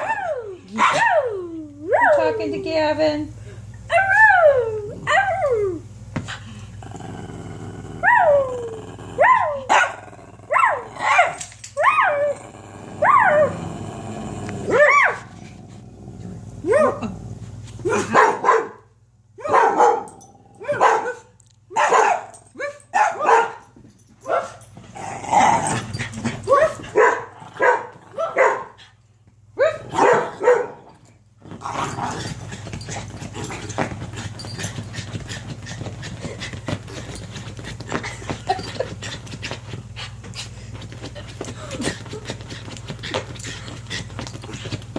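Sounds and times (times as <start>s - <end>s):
dogs barking excitedly: 9.2s - 12.2s, 17.9s - 24.7s, 25.9s - 28.8s, 29.6s - 30.9s.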